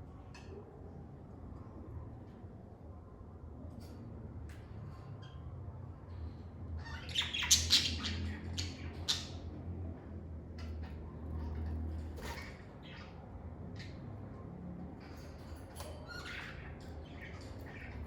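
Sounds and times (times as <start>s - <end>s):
lovebirds squawking and chirping: 6.8s - 9.4s, 16.0s - 18.0s.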